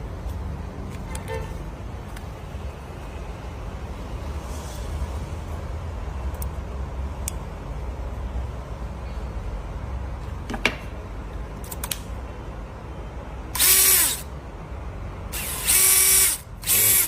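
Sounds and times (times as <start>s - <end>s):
power tool motor whining buzz: 13.6s - 14.2s, 15.3s - 17.0s.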